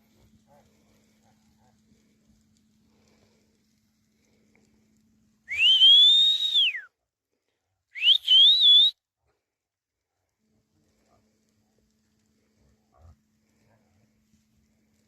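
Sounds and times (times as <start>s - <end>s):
person whistling: 5.5s - 6.9s, 8.0s - 8.9s.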